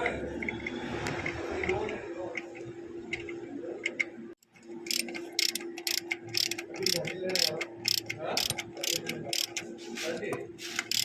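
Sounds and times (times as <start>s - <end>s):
steady background hum: 0.0s - 11.0s
ratchet wrench clicking: 4.8s - 9.6s, 10.8s - 11.0s.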